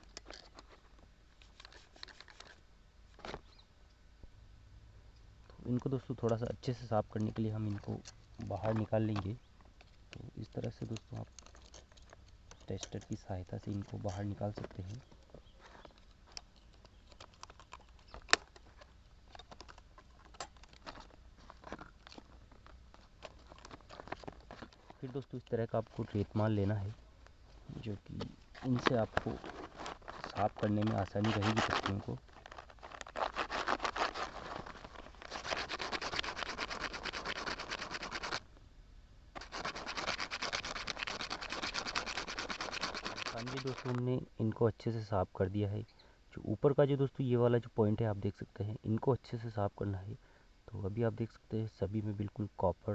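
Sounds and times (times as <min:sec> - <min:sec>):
sandpaper rubbing on metal: 0:30.3 - 0:32.1, 0:33.1 - 0:34.6, 0:35.2 - 0:38.4, 0:39.4 - 0:43.9.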